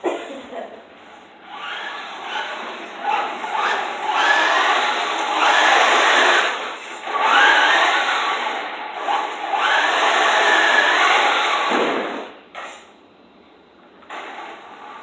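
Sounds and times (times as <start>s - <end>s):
toy car motor whining: 1.5s - 11.7s.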